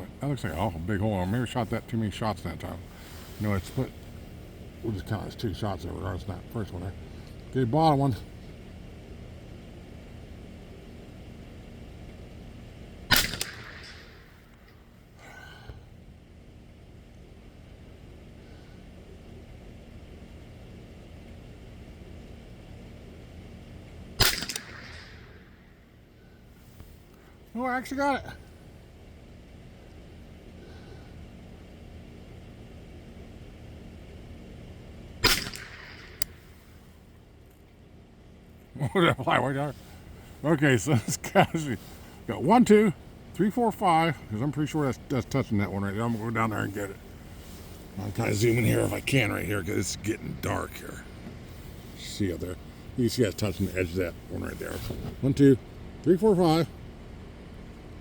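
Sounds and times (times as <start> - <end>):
rifle shot with echo: 13.1 - 14.3, 24.2 - 25.4, 35.2 - 36.3
sharp click: 24.2 - 25.2.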